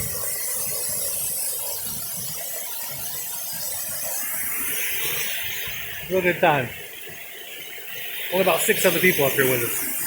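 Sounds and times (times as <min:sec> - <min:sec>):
waterfall rushing: 0:08.2 - 0:10.0.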